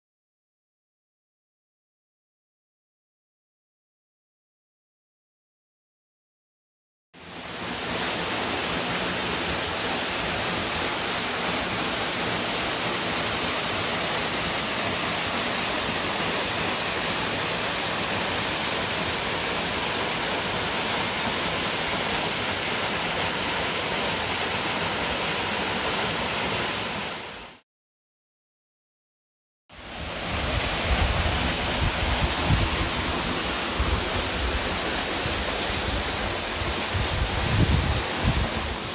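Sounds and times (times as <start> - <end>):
waterfall rushing: 7.2 - 27.6, 29.8 - 38.9.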